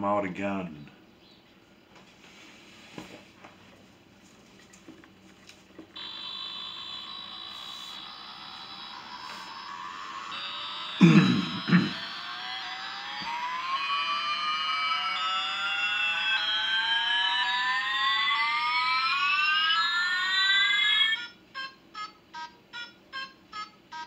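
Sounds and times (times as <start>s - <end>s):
tones sliding upward: 6.0s - 21.2s
rapid electronic beeping: 6.0s - 21.3s.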